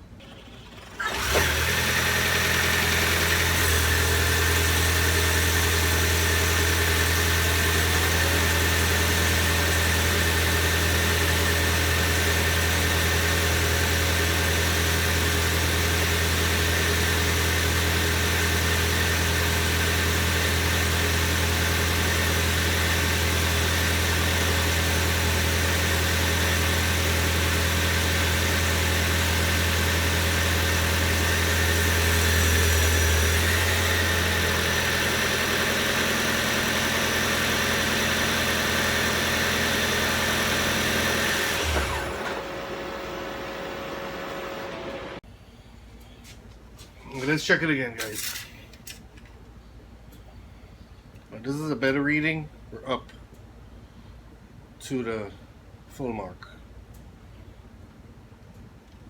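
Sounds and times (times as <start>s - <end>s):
car engine starting and idling: 0.0s - 45.2s.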